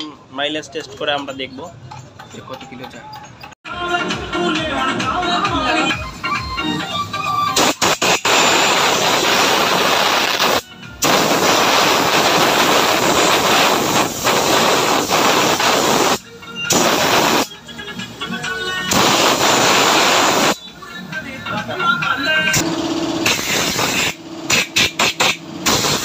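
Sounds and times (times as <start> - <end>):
loud hissing rush: 7.6 - 17.5, 18.9 - 20.6, 23.2 - 26.0
faint music: 20.2 - 22.6.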